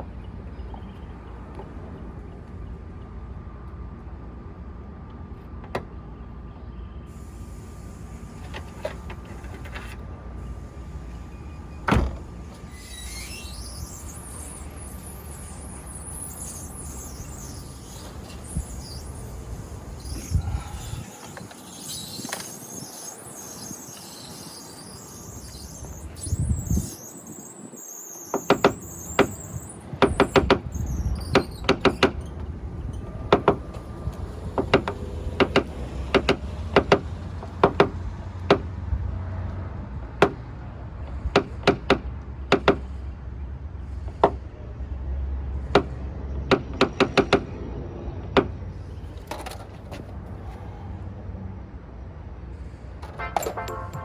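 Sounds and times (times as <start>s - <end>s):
high squeaking: 7.2s - 38.4s, 53.0s - 54.0s.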